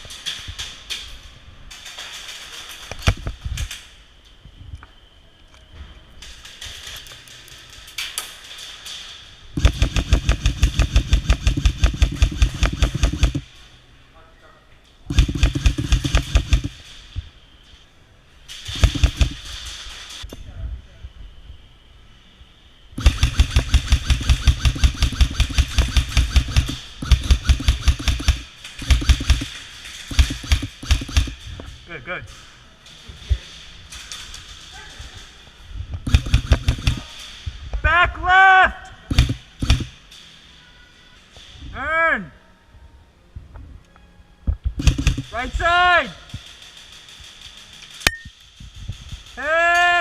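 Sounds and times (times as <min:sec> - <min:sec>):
airsoft gun full-auto burst: 0:09.6 - 0:13.5, 0:15.1 - 0:16.8, 0:18.6 - 0:19.5, 0:23.0 - 0:31.4, 0:36.0 - 0:37.2, 0:39.1 - 0:40.0, 0:44.8 - 0:45.7.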